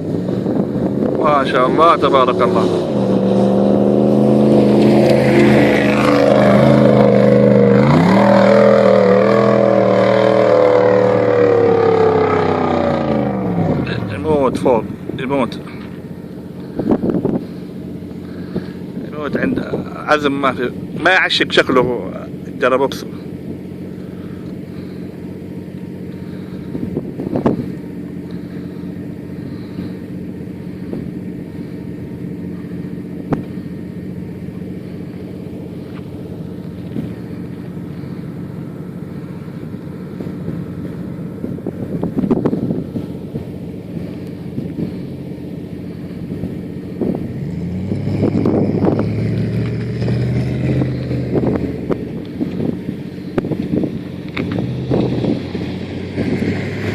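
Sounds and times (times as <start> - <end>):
off-road engine running: 0.0 - 56.9.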